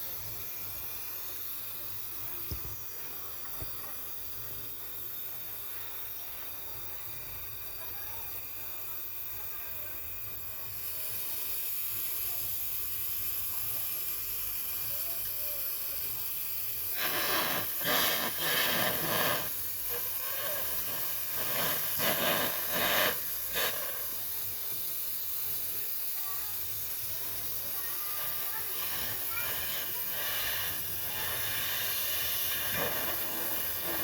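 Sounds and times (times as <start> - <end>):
pressurised gas hissing from pipes: 0.0 - 34.0
short spurts of hissing: 0.0 - 34.0.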